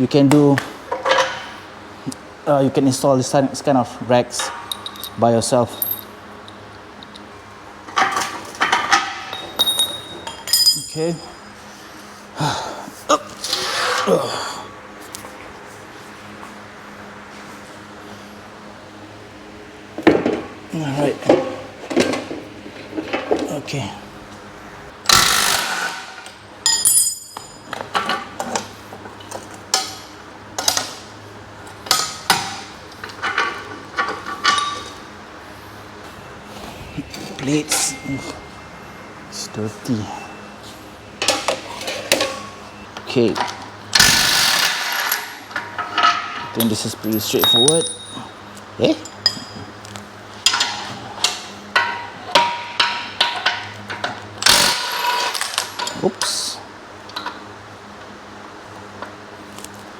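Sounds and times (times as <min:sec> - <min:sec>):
metal plates and bolts clinking: 0:04.4 - 0:06.1, 0:08.0 - 0:11.5, 0:26.7 - 0:28.0, 0:45.0 - 0:48.4
steel parts clanking: 0:04.4 - 0:06.1, 0:07.9 - 0:11.5, 0:37.1 - 0:38.5, 0:43.3 - 0:48.4.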